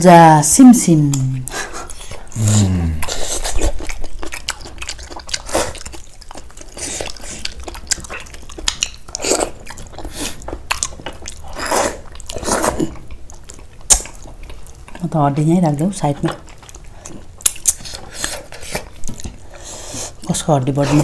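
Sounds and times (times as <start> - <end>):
chewing and gnawing meat: 1.0 - 21.0
sucking sounds: 2.3 - 3.6
wet mouth clicks: 17.4 - 19.4.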